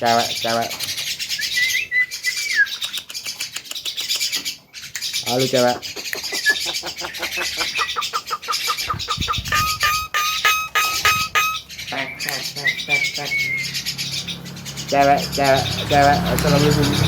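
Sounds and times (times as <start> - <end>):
myna calling: 5.4 - 17.0.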